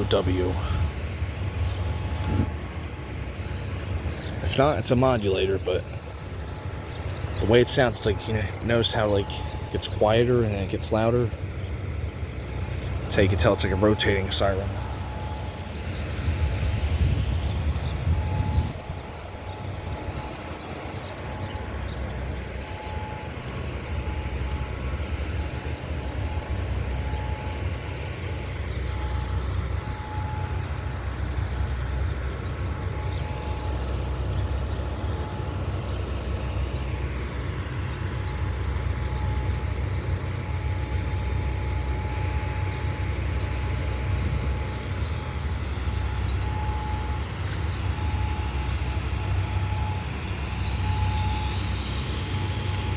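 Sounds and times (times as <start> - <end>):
distant warning siren: 0.0 - 52.9
heavy low rumble: 0.0 - 52.9.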